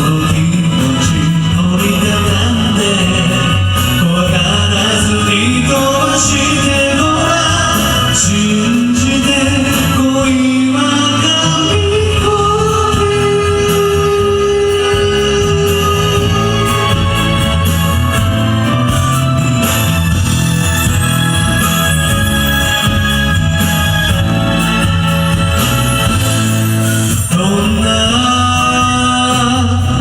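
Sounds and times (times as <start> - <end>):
person singing: 0.0 - 18.9, 27.1 - 30.0
karaoke backing track: 0.0 - 30.0.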